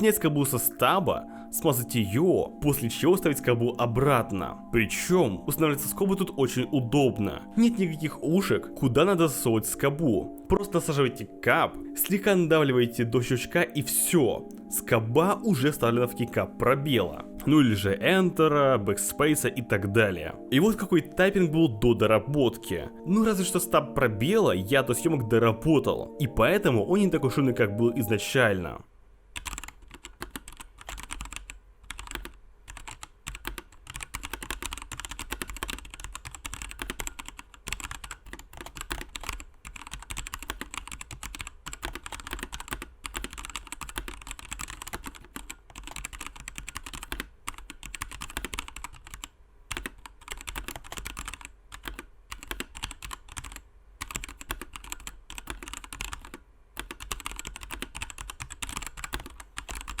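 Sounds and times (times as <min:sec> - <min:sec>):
fast typing on mechanical keyboard: 0:29.4 - 1:00.0.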